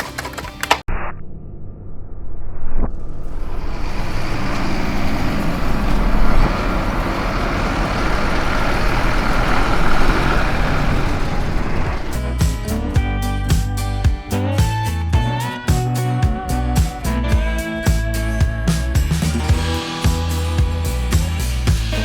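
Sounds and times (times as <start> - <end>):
truck engine rumbling: 3.2 - 15.2
noisy hiss: 3.3 - 12.7.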